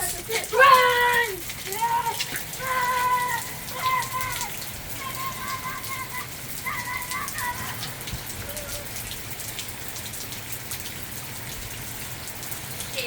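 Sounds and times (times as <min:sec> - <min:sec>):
raindrops hitting microphone: 0:00.0 - 0:13.0
steady heavy rain: 0:00.0 - 0:13.0.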